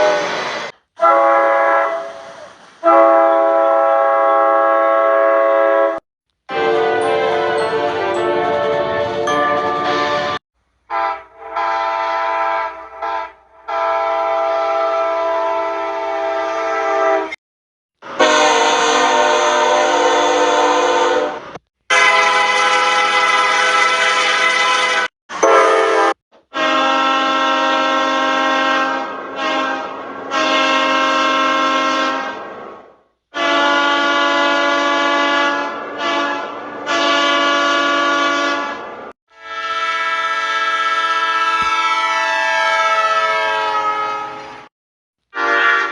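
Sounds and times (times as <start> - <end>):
locomotive air horns: 0.0 - 17.4, 18.0 - 32.6, 33.3 - 44.7, 45.3 - 45.9.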